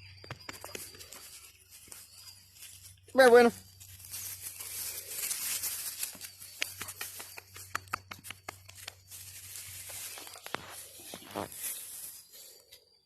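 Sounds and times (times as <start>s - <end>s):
rustling and crinkling: 0.4s - 12.9s.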